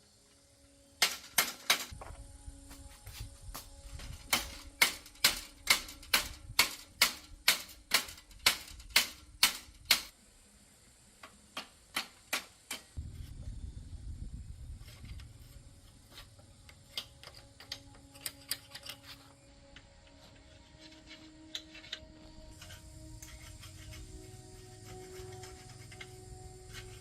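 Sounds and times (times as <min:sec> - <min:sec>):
sharp taps on metal: 0:04.3 - 0:10.1.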